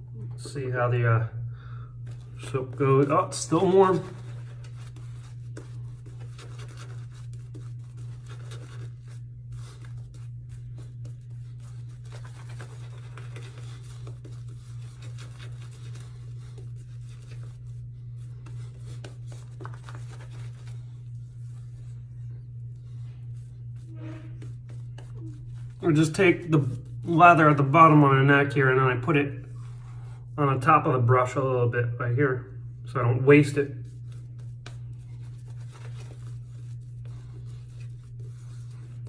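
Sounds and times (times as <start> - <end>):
low electrical hum: 0.0 - 39.0
shaving brush strokes: 2.1 - 27.7, 33.4 - 39.0.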